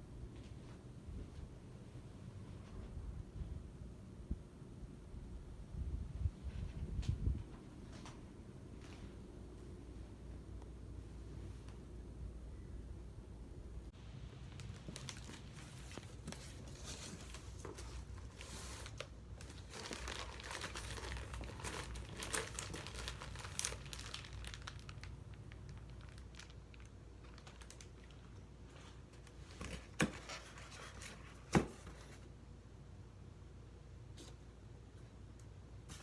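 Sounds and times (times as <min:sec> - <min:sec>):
wrapping crinkling and tearing: 0:14.4 - 0:31.3.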